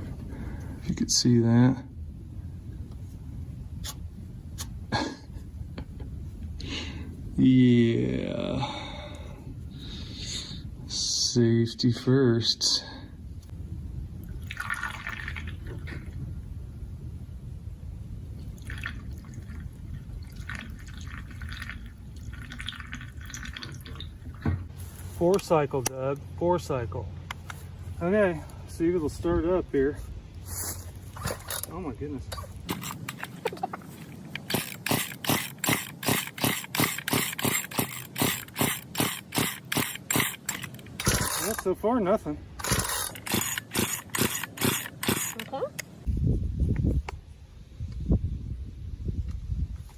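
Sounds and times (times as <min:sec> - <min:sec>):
steady low rumble: 0:00.0 - 0:49.8
liquid trickling and dripping: 0:18.4 - 0:24.7
chainsaw recoil starter pulls: 0:32.7 - 0:33.4, 0:34.3 - 0:41.7, 0:42.6 - 0:45.6.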